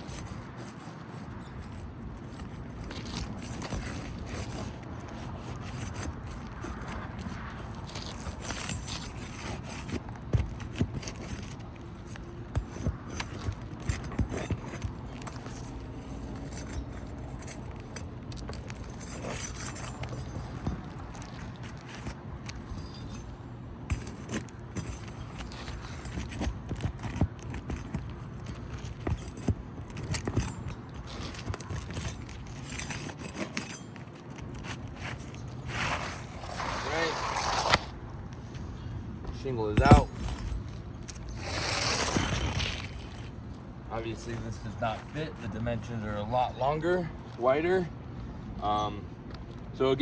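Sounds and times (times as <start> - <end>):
hand tools scraping on shingles: 0.0 - 47.9
staples being pulled: 23.9 - 38.7, 39.3 - 43.4.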